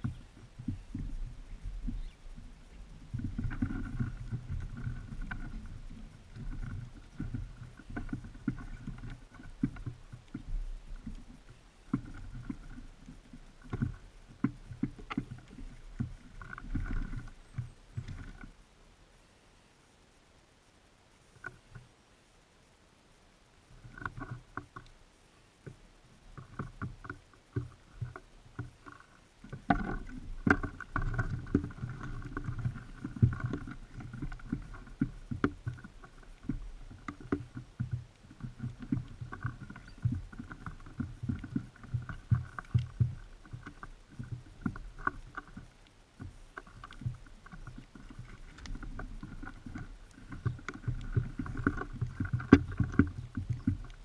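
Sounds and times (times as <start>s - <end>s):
birds tapping and pecking at feeder: 46.2s - 54.0s.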